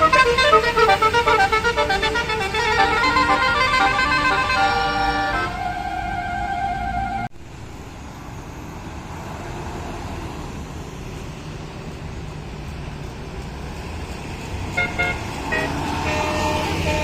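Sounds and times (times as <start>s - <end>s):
multi-tone bus horn: 0.0s - 7.3s, 14.8s - 17.0s
engine and traffic noise: 0.0s - 17.0s.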